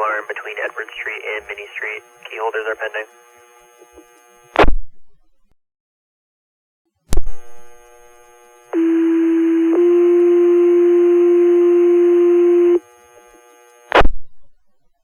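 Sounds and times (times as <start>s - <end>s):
radio squelch burst: 0.0s - 3.1s
radio hiss: 0.0s - 4.5s.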